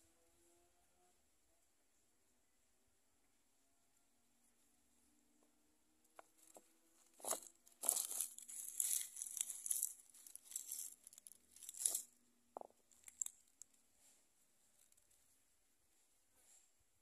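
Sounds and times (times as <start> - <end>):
rustling crinkling handling noise: 6.2 - 12.1, 12.9 - 15.2.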